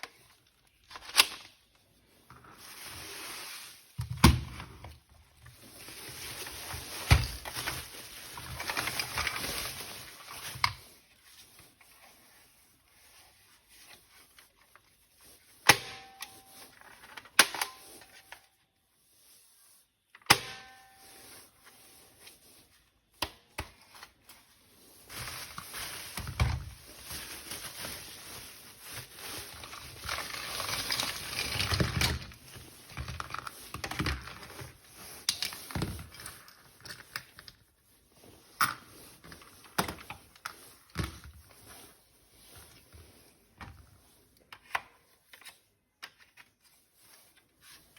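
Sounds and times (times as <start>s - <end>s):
packaging rustling and knocking: 4.0s - 10.7s, 25.0s - 36.4s.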